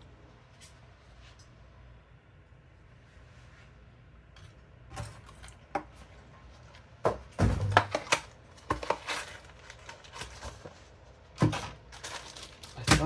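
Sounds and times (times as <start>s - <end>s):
metal screws clinking: 11.8s - 13.0s.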